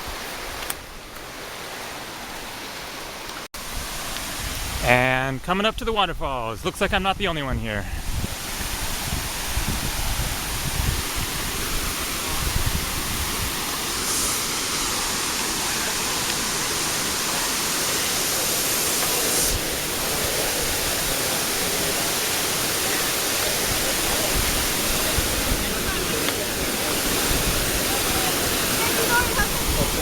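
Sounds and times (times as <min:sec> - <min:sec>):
wind rumble on microphone: 0:03.7 - 0:04.9, 0:07.9 - 0:13.7, 0:29.1 - 0:30.0
waterfall rushing: 0:06.7 - 0:30.0.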